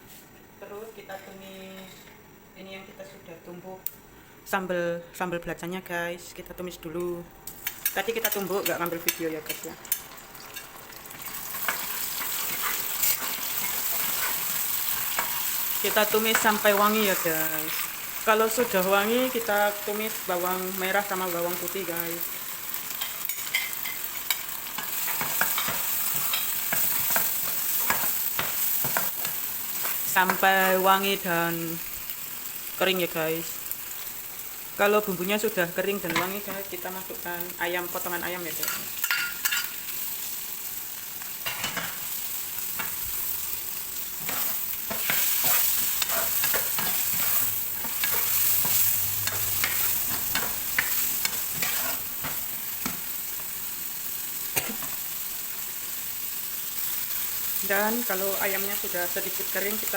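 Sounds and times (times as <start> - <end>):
food sizzling in hot oil: 7.4 - 59.9
spatula scraping and tapping pan: 44.2 - 53.1.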